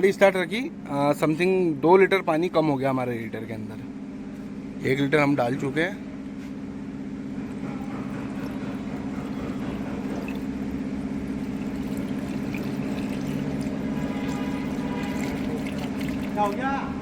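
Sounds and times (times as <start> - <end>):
steady mechanical hum: 0.0 - 17.0
water pouring into radiator: 7.8 - 16.7.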